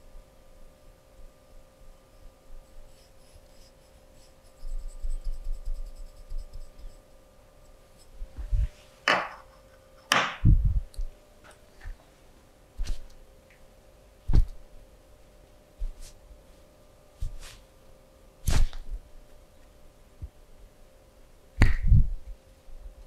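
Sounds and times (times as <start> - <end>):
fingernails scratching skin: 2.7 - 7.0.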